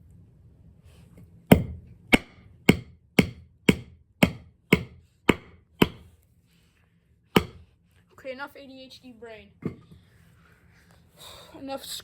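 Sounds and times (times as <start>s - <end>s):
hammer strikes with ring: 1.5s - 6.1s, 7.4s - 7.6s.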